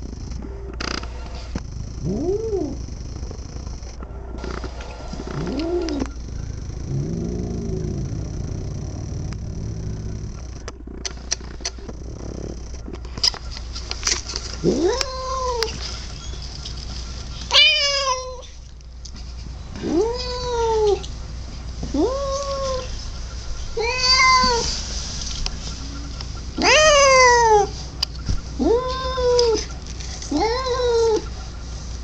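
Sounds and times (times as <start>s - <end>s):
cat yowling meows: 23.8s - 24.7s, 26.6s - 27.7s, 28.6s - 29.7s, 30.3s - 31.3s.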